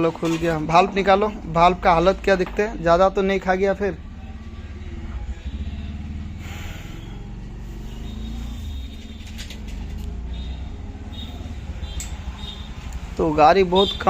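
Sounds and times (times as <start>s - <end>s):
highway traffic rumble: 0.0s - 14.0s.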